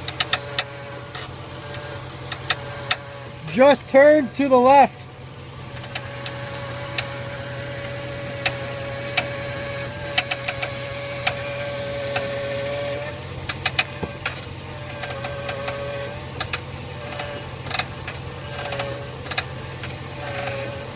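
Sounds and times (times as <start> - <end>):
steering creaks and clicks: 0.0 - 5.0, 5.7 - 20.9
engine idling: 0.0 - 20.9
steady whine: 0.0 - 20.9.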